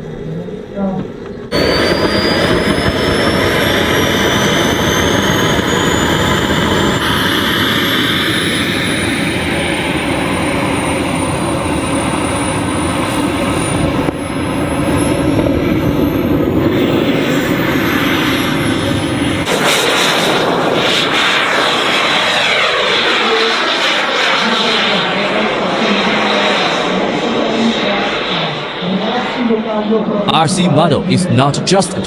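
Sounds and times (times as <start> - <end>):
jet engine roar with whine: 0.0 - 32.0.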